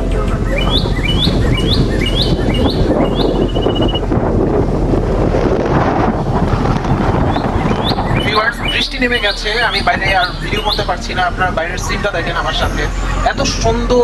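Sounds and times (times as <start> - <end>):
bird chirping and trilling: 0.0 - 4.0, 7.2 - 14.0
wind buffeting microphone: 0.0 - 14.0.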